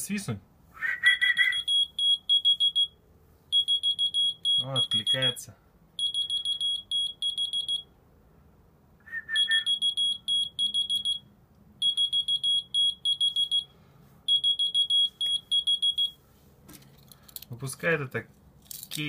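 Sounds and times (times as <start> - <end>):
short whistle: 0.8 - 1.7, 9.0 - 9.8
key finder high-pitched beeps: 1.4 - 3.0, 3.6 - 5.4, 6.0 - 7.9, 9.4 - 13.7, 14.3 - 16.2.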